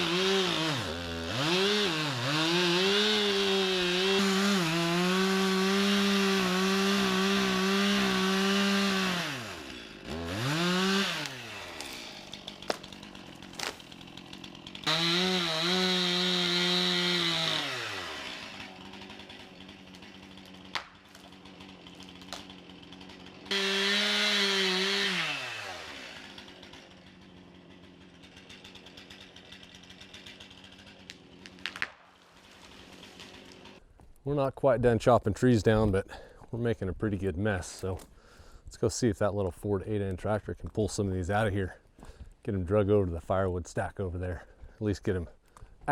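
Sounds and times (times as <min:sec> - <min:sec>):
chainsaw cutting and revving: 0:00.0 - 0:33.8
sharp cracks of wood: 0:08.6 - 0:15.8, 0:17.0 - 0:26.8, 0:27.8 - 0:34.2.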